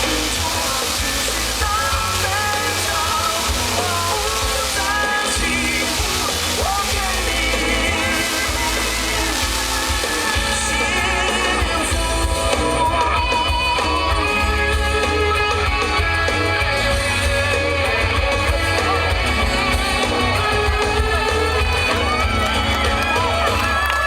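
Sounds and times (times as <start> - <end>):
steady bass line: 0.0 - 23.7
guitar: 0.0 - 24.0
person singing: 0.0 - 24.0.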